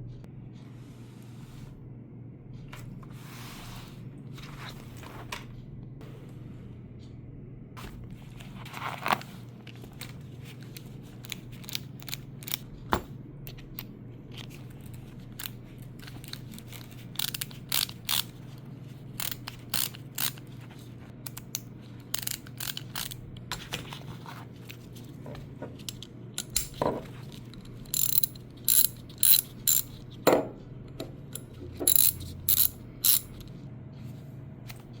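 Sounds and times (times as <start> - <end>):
steady low hum: 0.0 - 35.0
metal tools clicking: 15.4 - 18.3, 19.2 - 20.4, 21.3 - 23.2, 25.8 - 30.0, 31.3 - 33.5
socket ratchet clicking: 15.4 - 18.3, 19.2 - 20.4, 21.3 - 23.2, 25.9 - 30.0, 31.3 - 33.4.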